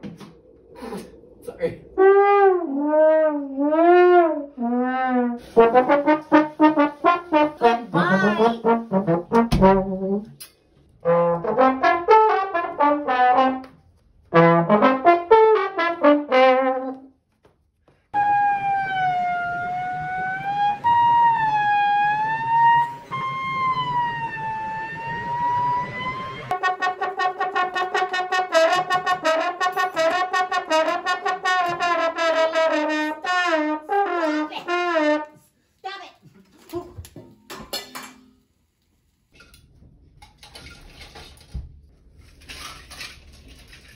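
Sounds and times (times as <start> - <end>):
comic brass wah-wah effects: 2.0 - 10.3, 11.0 - 13.7, 14.3 - 17.1, 18.2 - 35.4.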